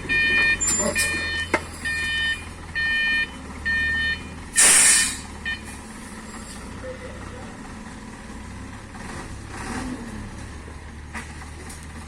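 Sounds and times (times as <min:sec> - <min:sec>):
reversing alarm beeping: 0:00.0 - 0:06.5
diesel engine running: 0:00.0 - 0:12.0
loud short hiss: 0:04.6 - 0:05.3.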